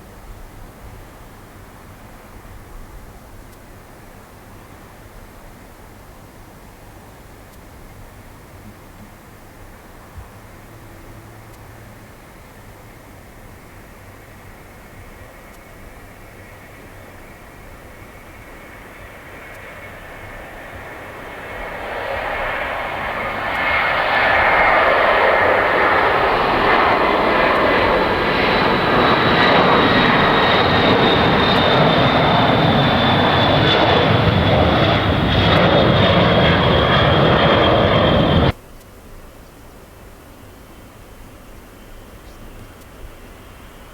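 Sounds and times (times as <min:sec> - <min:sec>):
jet airliner taking off: 0:16.5 - 0:38.6
high engine whine falling in pitch: 0:19.9 - 0:38.5.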